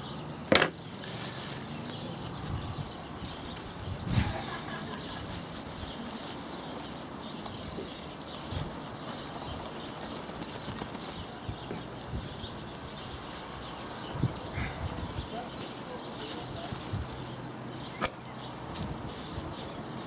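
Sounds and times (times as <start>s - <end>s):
wind on microphone: 2.3s - 5.4s, 11.4s - 15.5s, 16.5s - 17.4s.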